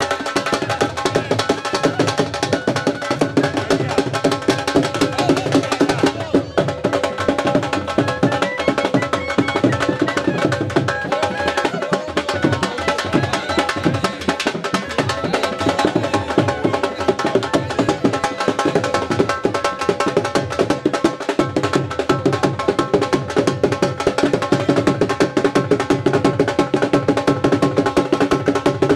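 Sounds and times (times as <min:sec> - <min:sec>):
drums played fast: 0:00.0 - 0:28.9.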